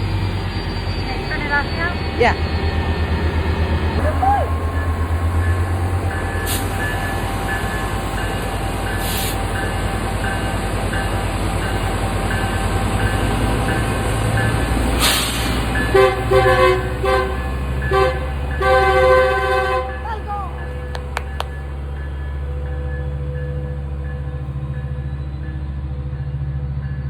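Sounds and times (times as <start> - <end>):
locomotive low rumble: 0.0 - 27.0
locomotive horn honks: 15.9 - 21.2.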